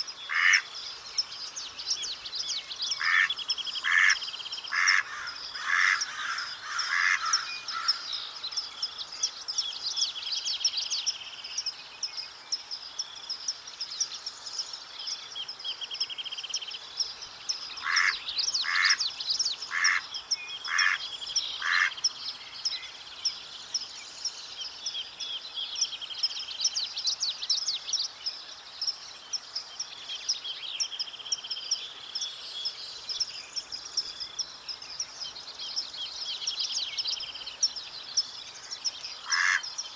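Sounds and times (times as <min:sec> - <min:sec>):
birds chirping and trilling: 0:00.0 - 0:39.9
mallard quacking: 0:39.3 - 0:39.6.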